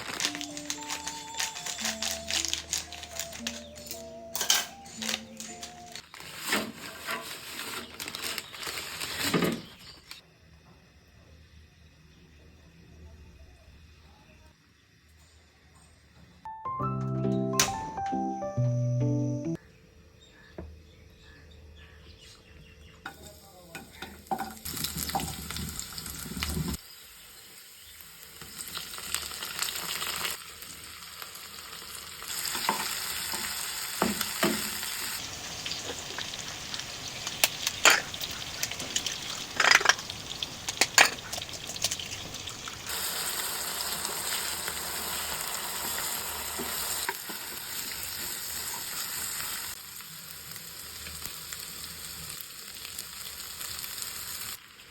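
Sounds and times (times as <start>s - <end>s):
utensil scraping a pan: 6.3s - 9.4s
food sizzling in a pan: 23.1s - 54.9s.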